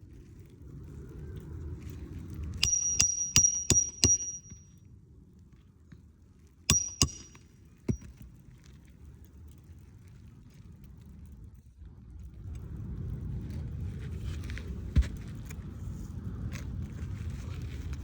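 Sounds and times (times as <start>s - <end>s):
hammer striking nails: 2.6s - 4.6s, 6.7s - 8.1s.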